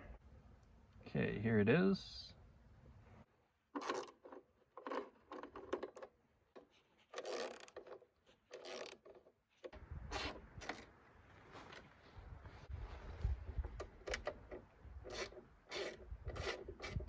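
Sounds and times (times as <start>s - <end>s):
rubbing and scraping strokes: 15.0s - 17.0s.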